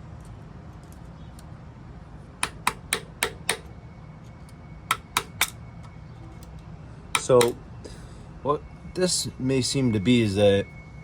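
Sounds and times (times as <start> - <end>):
hand tool tapping on a part: 2.4 - 3.7, 4.9 - 5.5, 7.2 - 7.6.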